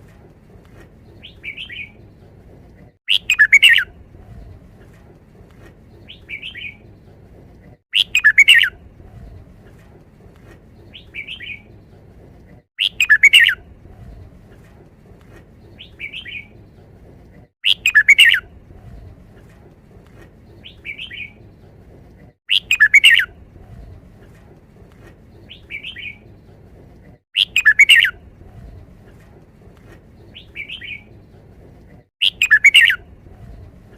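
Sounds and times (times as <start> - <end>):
bulbul singing: 3.1 - 3.9, 7.9 - 8.8, 12.8 - 13.6, 17.6 - 18.5, 22.5 - 23.4, 27.4 - 28.2, 32.2 - 33.6.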